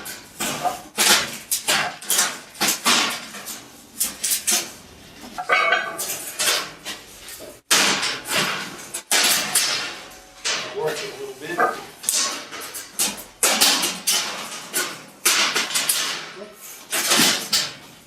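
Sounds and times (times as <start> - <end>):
steel pieces clanking: 5.4 - 18.0.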